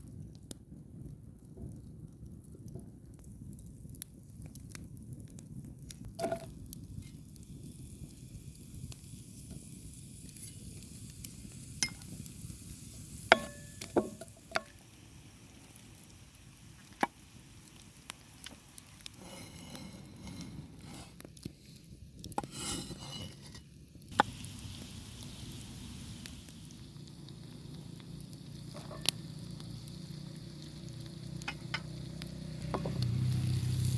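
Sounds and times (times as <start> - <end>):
quiet sizzle in a pan: 0.0 - 33.9
utensil stirring and scraping: 22.4 - 23.7.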